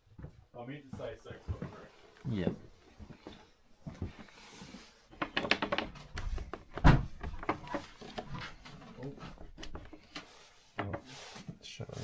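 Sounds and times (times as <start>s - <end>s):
clattering wooden knocks: 5.1s - 10.2s.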